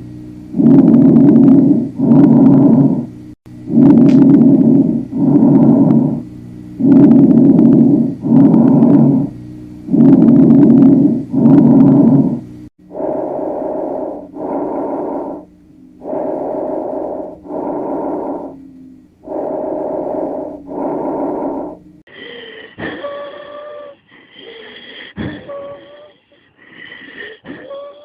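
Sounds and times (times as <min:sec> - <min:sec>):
breathing through stethoscope: 0:09.9 - 0:27.7
wheezing whistles: 0:12.9 - 0:28.0.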